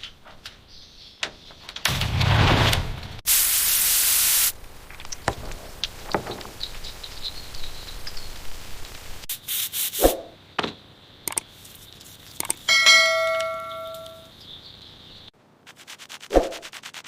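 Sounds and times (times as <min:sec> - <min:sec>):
sharp knocks: 0:05.2 - 0:06.7
metal part struck and ringing: 0:12.7 - 0:14.3.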